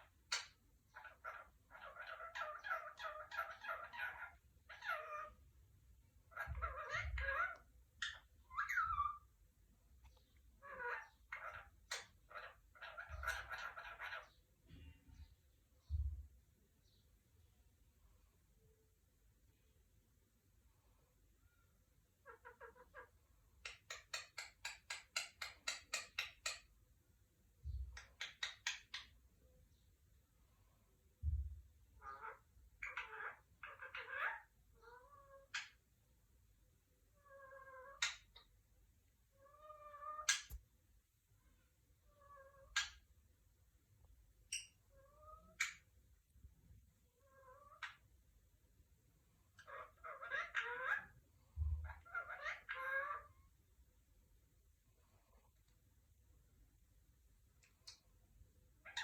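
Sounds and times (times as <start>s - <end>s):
parrot chattering: 0.3s - 5.4s, 6.3s - 9.3s, 10.6s - 14.4s, 22.2s - 26.7s, 32.0s - 35.8s, 49.6s - 51.2s, 51.8s - 53.3s.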